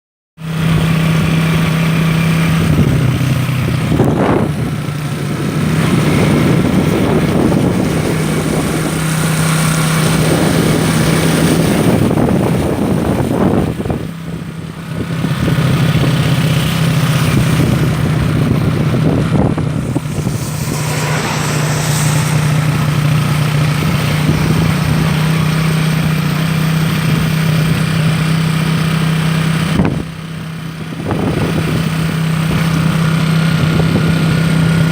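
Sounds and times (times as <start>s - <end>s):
engine running: 0.4s - 34.9s
dense wash of noise: 1.4s - 13.8s, 14.7s - 29.6s.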